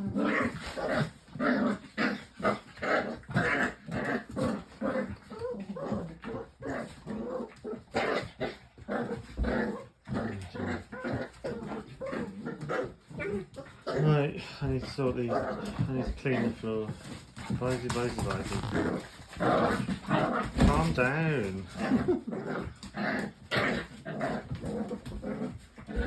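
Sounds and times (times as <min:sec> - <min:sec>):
dogs growling: 0:00.0 - 0:26.0
dogs yipping and whining: 0:03.2 - 0:10.0, 0:10.8 - 0:14.0.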